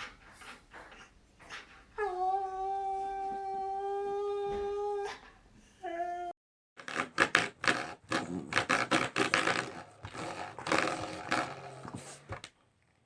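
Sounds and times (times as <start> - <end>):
dog growling: 7.7 - 12.4.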